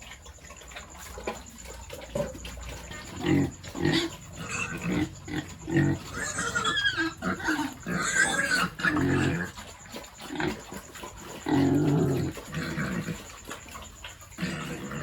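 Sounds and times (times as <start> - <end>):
pigs grunting: 0.0 - 15.0
pigs squealing: 0.0 - 15.0.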